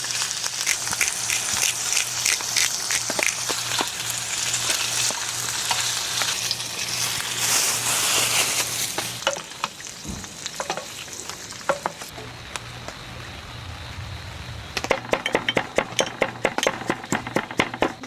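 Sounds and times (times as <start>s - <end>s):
food sizzling in a pan: 0.0s - 13.6s
sharp pops and crackles: 0.4s - 4.0s, 8.9s - 18.0s.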